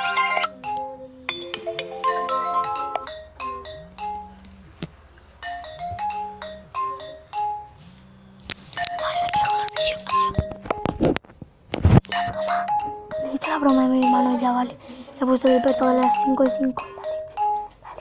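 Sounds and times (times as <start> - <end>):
smartphone alarm melody: 0.0 - 4.6, 12.1 - 14.6, 15.4 - 17.8.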